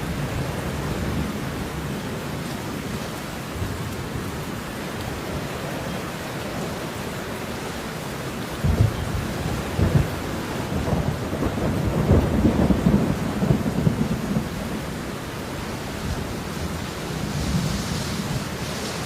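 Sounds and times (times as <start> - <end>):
steady falling rain: 0.0 - 19.0
crackling rumble of thunder: 8.6 - 15.2.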